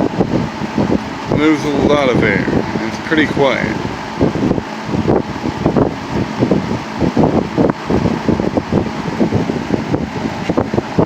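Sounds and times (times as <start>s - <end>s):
air buffeting microphone: 0.0s - 11.0s
box fan running: 0.0s - 11.0s.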